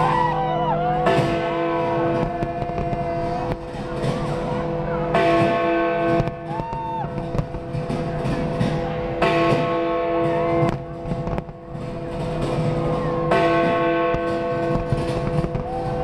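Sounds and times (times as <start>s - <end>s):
firework bangs: 0.0s - 16.0s.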